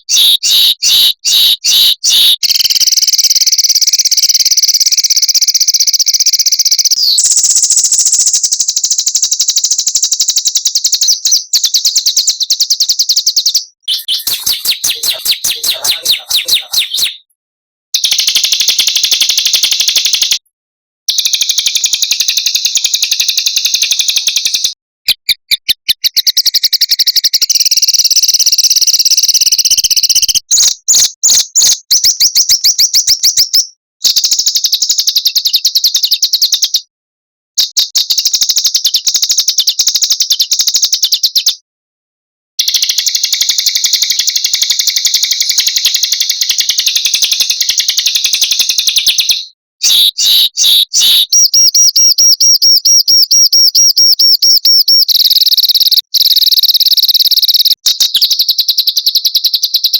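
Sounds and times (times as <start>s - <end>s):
songbirds trilling: 0.0s - 2.4s, 13.9s - 17.2s.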